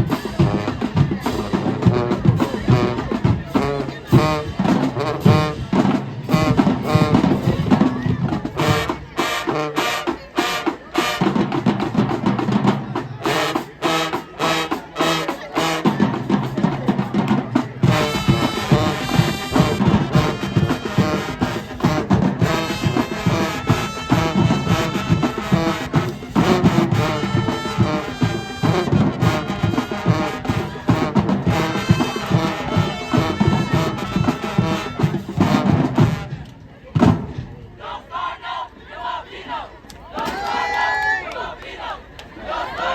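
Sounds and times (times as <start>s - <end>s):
snare and bass drums: 0.0s - 37.7s
marching band brass: 0.0s - 42.9s.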